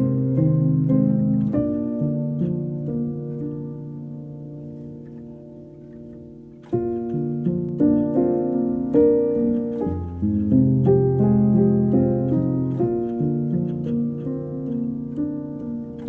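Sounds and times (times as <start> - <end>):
piano music: 0.0 - 16.0.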